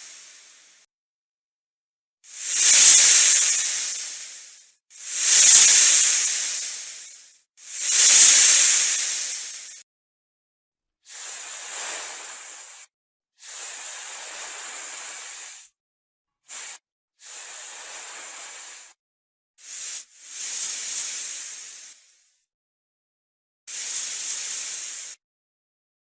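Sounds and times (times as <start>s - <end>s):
snake hissing: 0.0s - 0.8s, 2.3s - 9.8s, 11.1s - 15.7s, 16.5s - 19.0s, 19.6s - 22.2s, 23.7s - 25.2s.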